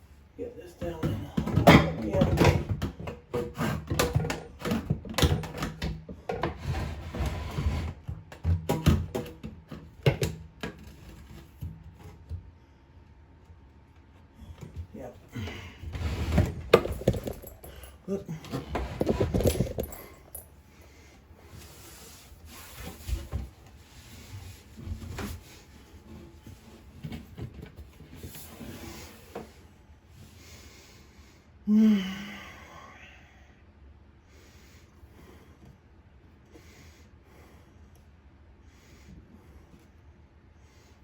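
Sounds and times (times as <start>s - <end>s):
plastic drain parts rustling and knocking: 16.4s - 17.8s, 18.5s - 20.4s
person grunting: 31.7s - 32.6s.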